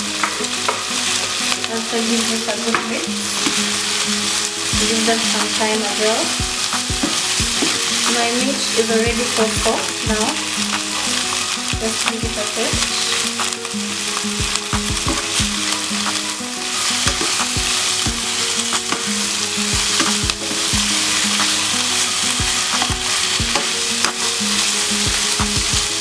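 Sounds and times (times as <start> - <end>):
food sizzling in oil: 0.0 - 26.0.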